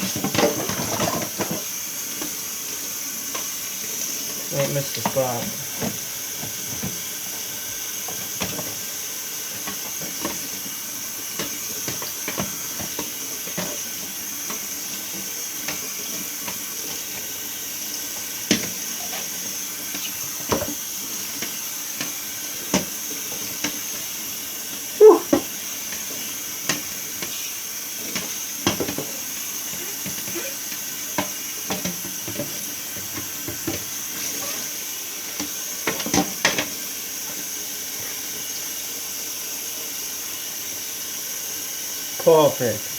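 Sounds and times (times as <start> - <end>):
running water hissing: 0.0 - 42.9.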